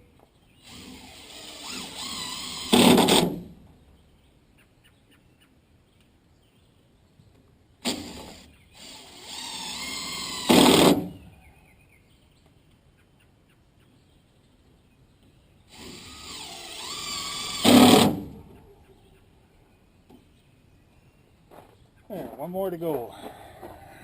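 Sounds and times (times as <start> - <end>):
power drill driving a screw: 0.6 - 3.5, 7.8 - 11.2, 15.7 - 18.4.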